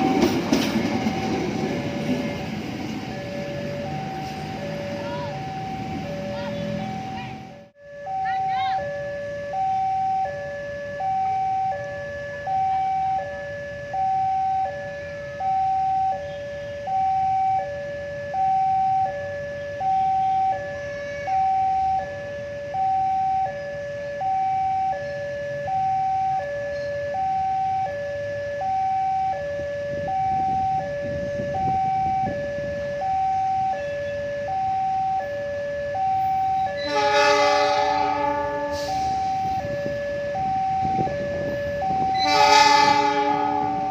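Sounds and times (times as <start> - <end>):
train rumble: 0.0 - 8.6, 36.3 - 43.9
level crossing alarm two-tone: 2.8 - 43.9
locomotive horn blast: 36.6 - 39.8, 40.9 - 43.9.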